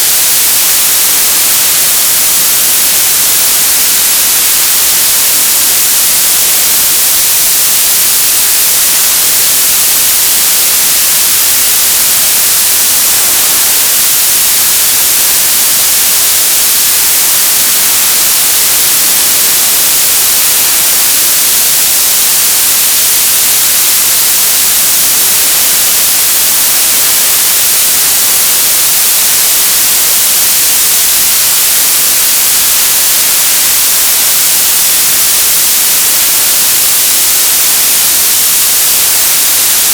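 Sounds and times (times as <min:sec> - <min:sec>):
television static hiss: 0:00.0 - 0:39.9.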